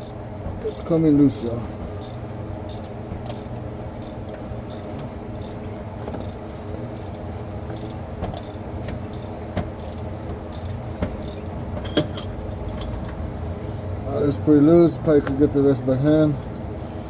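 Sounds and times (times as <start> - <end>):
ratchet clicking: 0.0 - 5.6, 6.2 - 13.2.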